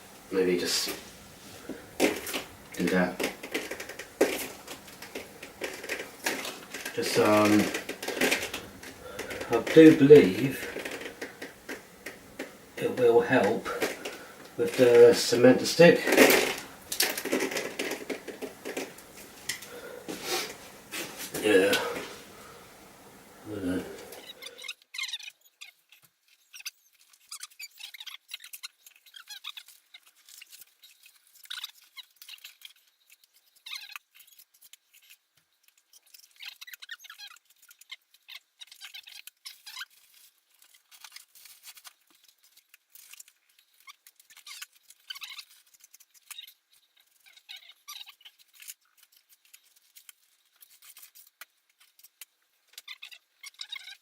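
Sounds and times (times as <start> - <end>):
wet sponge squeaking on brick: 2.0 - 18.9, 23.5 - 35.1, 35.8 - 41.8, 43.5 - 49.6, 52.8 - 54.0.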